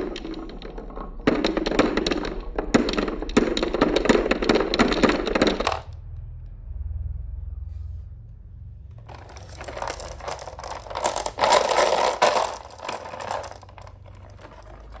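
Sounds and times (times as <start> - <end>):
marbles rattling down wooden run: 0.0 - 5.9, 9.0 - 15.0.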